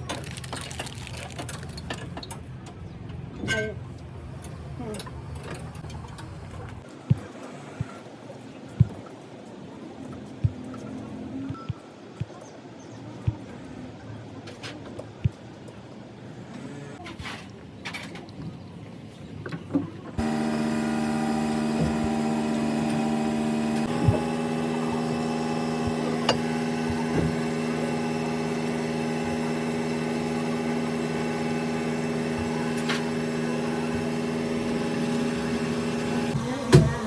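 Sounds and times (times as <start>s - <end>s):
steady mechanical hum: 13.3s - 37.0s.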